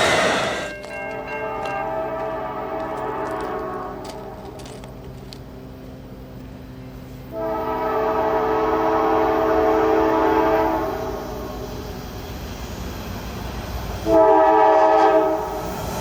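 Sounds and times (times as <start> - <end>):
locomotive air horn: 0.0 - 4.7, 7.3 - 11.6, 14.0 - 15.7
locomotive hum: 0.0 - 16.0.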